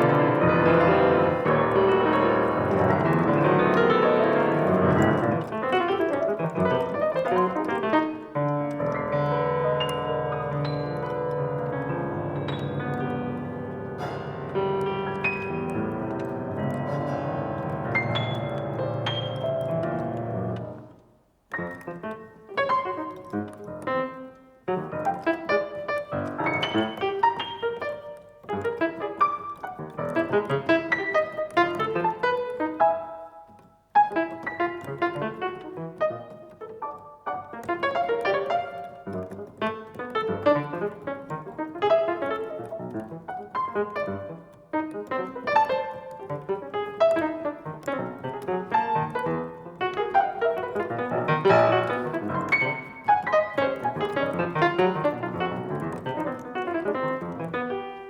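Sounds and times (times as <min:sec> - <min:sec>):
fast piano playing: 0:00.0 - 0:58.0.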